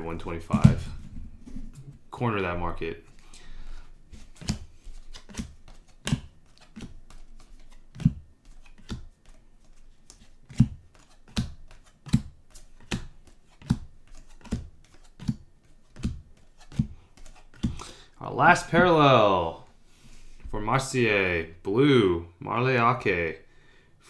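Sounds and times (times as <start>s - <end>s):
cards tapping on a table: 10.5s - 17.8s.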